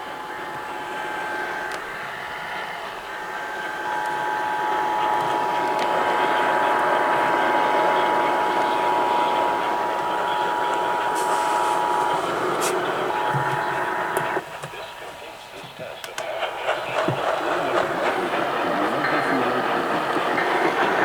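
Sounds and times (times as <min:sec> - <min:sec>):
radio static: 0:05.5 - 0:21.0.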